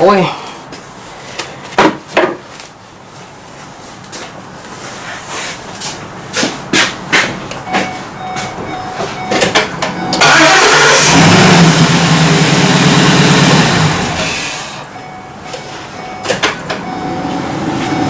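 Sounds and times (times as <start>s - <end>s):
engine cranking and running: 8.2s - 18.0s.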